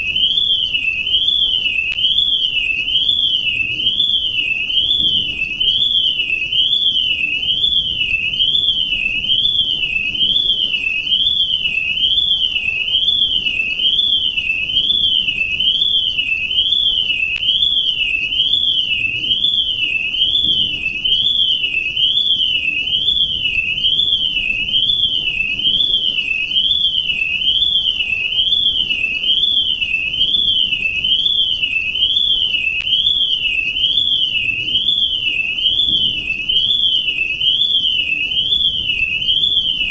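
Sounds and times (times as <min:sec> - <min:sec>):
shrill electronic alarm sweeping: 0:00.0 - 0:39.9.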